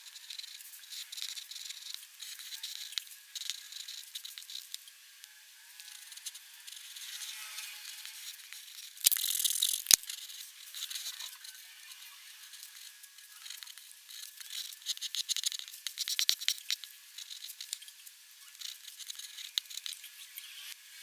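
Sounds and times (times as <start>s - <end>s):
pen nib scratching on paper: 0.3s - 4.8s, 12.5s - 17.8s, 18.5s - 20.0s.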